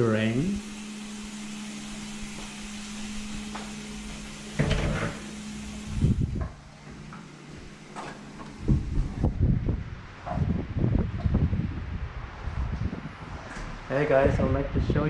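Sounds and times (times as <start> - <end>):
steady hiss: 0.0 - 9.2
door knocks and bumps: 4.6 - 5.2.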